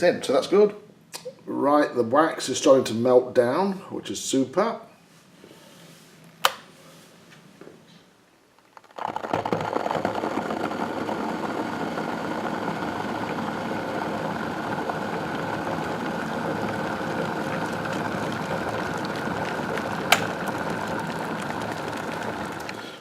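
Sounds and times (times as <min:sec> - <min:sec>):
small motor running: 0:09.0 - 0:21.2.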